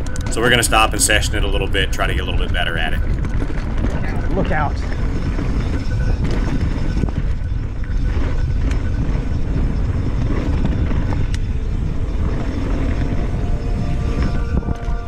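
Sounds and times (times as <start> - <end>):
bike clicks and rattles: 0.0 - 0.9, 3.0 - 13.1
wind and tyre rumble: 0.0 - 15.0.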